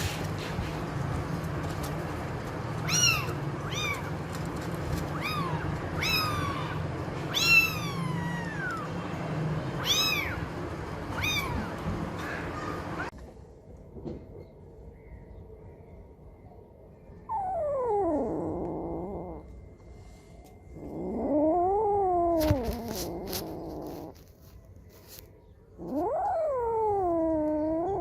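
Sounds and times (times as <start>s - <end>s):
cat meowing: 2.8s - 4.2s, 5.0s - 9.0s, 9.7s - 10.5s, 11.1s - 13.1s, 20.8s - 24.2s.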